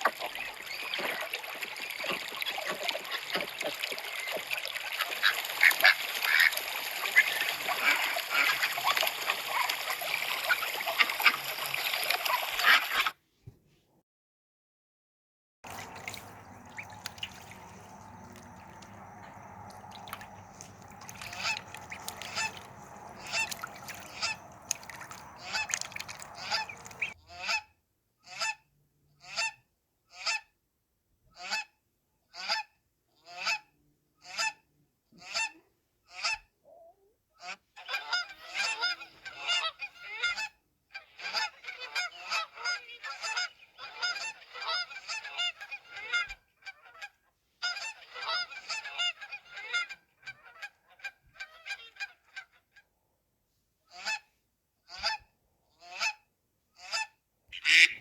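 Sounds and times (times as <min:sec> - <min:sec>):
geese honking: 0:00.0 - 0:11.8, 0:15.7 - 0:27.6, 0:41.2 - 0:46.8, 0:47.6 - 0:52.4, 0:56.9 - 0:58.0.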